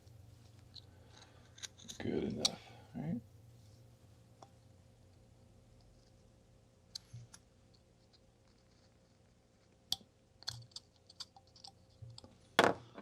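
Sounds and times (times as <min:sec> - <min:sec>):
knife carving wood clicks: 0:09.9 - 0:11.7.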